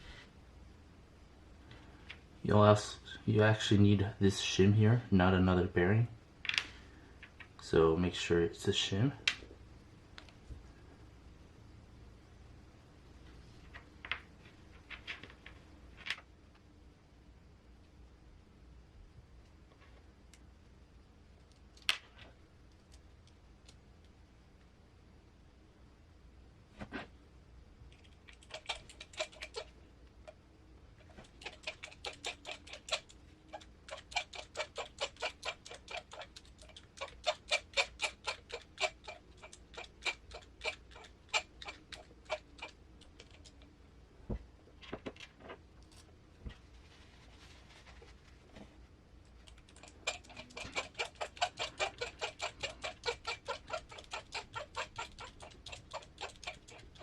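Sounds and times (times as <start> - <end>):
rapid light clicking: 31.2 - 43.6, 49.4 - 57.0.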